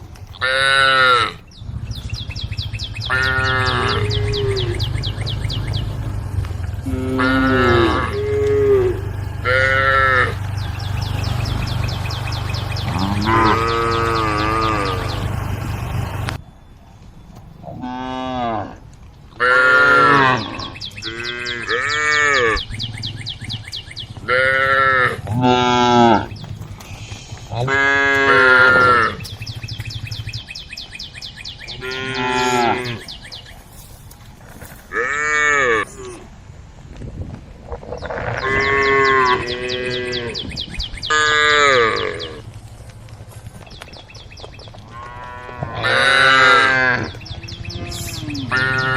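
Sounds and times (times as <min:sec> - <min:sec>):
steady low hum: 0:01.6 - 0:17.7
high chirping trill: 0:02.0 - 0:16.4
fast high ticking call: 0:02.4 - 0:16.4
cattle mooing: 0:03.1 - 0:16.4, 0:17.7 - 0:18.8, 0:19.4 - 0:22.7, 0:24.2 - 0:26.3, 0:27.4 - 0:29.3, 0:31.7 - 0:33.1, 0:34.9 - 0:36.2, 0:38.0 - 0:40.5, 0:41.1 - 0:42.4, 0:44.9 - 0:48.9.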